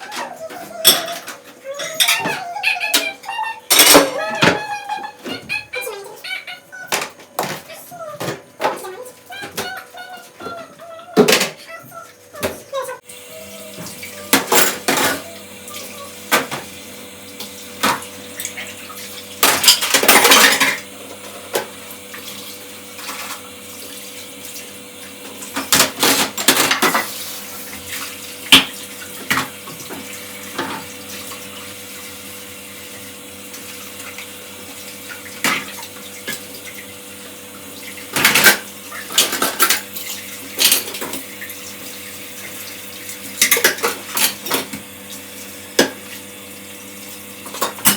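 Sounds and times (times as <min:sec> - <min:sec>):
dishes and cutlery clattering: 0:00.0 - 0:04.7, 0:14.2 - 0:15.4, 0:19.4 - 0:21.7, 0:38.1 - 0:41.3, 0:43.4 - 0:44.8, 0:47.4 - 0:47.9
water running from a tap: 0:11.8 - 0:47.9.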